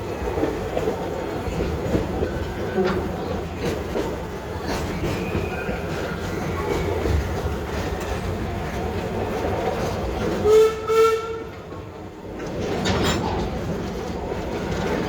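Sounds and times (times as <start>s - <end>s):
train rail clatter: 0.0s - 15.0s
locomotive whistle blast: 10.4s - 11.5s.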